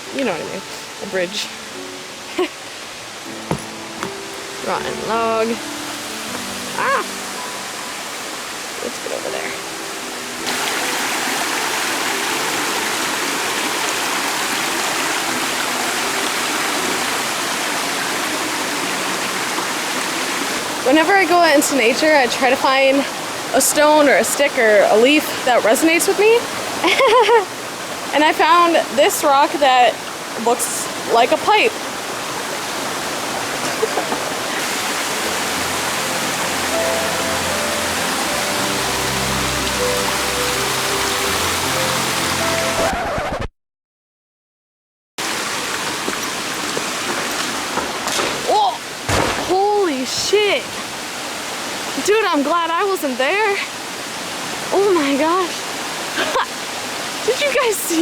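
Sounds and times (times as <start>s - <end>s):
soft background music: 0.0s - 26.2s, 34.6s - 42.9s
water rushing over rocks: 0.0s - 43.1s, 45.2s - 58.0s.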